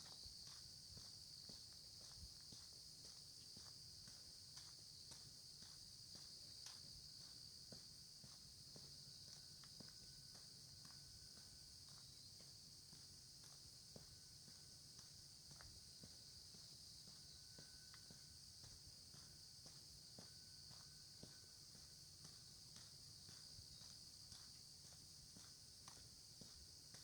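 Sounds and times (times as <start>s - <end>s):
footsteps on lane: 12.9s - 27.0s.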